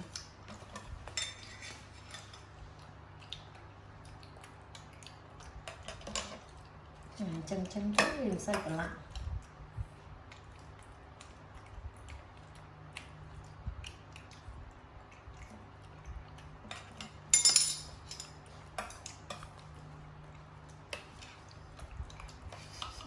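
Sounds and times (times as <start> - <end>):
dishes and utensils clinking: 16.7 - 19.5.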